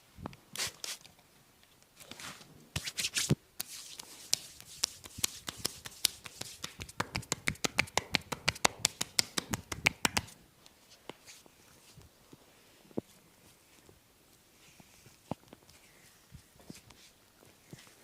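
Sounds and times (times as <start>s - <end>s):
hands slapping skin: 2.8s - 10.4s.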